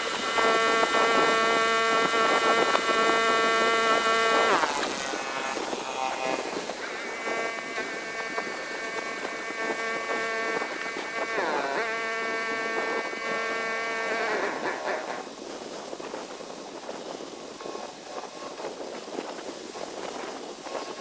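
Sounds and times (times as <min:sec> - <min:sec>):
pressure washer whining: 0:00.0 - 0:15.3.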